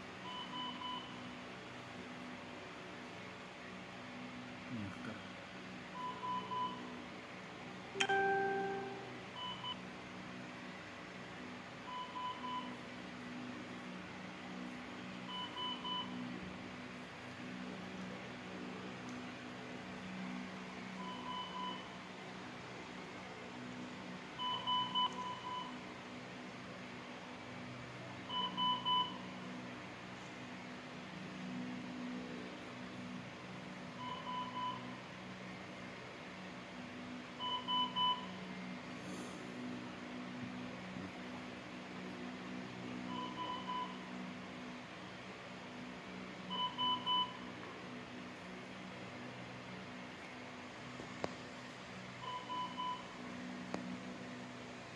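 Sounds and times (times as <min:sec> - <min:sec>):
steady low hum: 0:00.0 - 0:54.9
low equipment hum: 0:07.8 - 0:09.7
electronic monitor beeping: 0:08.0 - 0:09.8.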